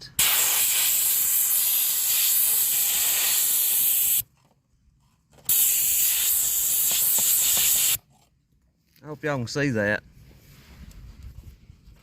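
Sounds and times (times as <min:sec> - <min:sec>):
compressed air hissing: 0:00.0 - 0:04.2, 0:05.5 - 0:08.0.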